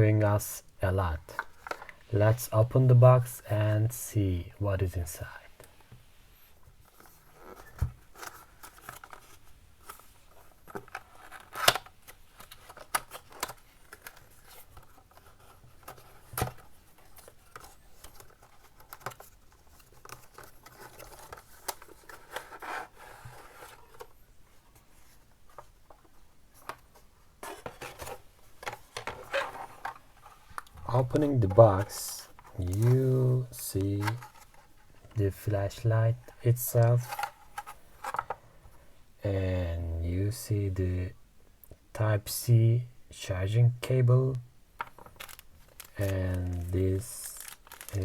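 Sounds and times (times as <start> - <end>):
packaging rustling: 6.8 - 24.2, 44.8 - 48.0.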